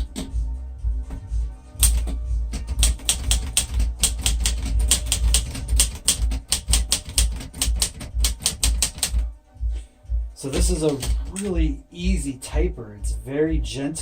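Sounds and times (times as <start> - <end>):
manual typewriter typing: 1.8 - 9.3, 10.4 - 11.6.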